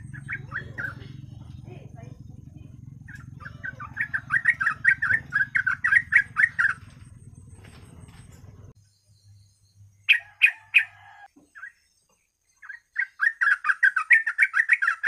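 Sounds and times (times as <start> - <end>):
bird chattering call: 0.0 - 7.4, 10.1 - 11.8, 12.6 - 15.0
steady low hum: 0.0 - 10.1.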